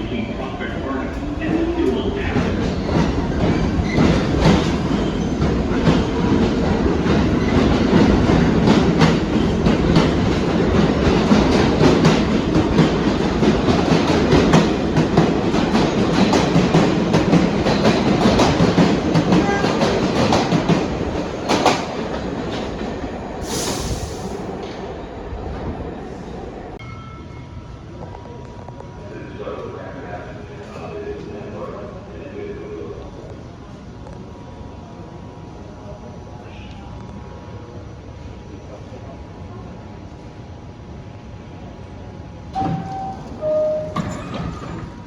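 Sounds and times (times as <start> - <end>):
subway train wheels clattering: 0.0 - 45.0
short hiss: 23.4 - 24.4.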